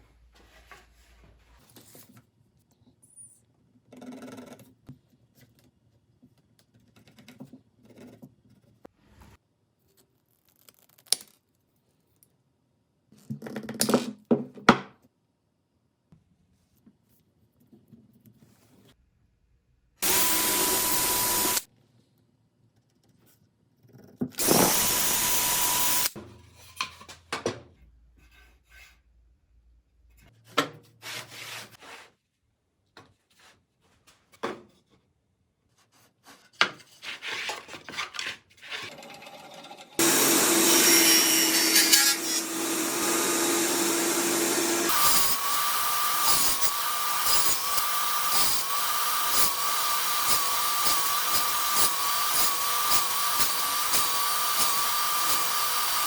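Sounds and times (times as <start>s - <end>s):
table saw cutting wood: 20.0s - 21.7s, 24.4s - 26.2s, 38.8s - 56.0s.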